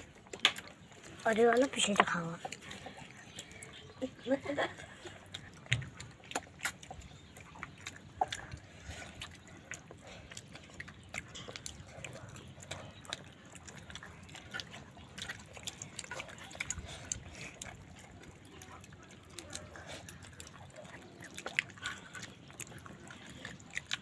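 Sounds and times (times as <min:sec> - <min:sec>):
wet chewing and lip-smacking: 0:00.0 - 0:24.0.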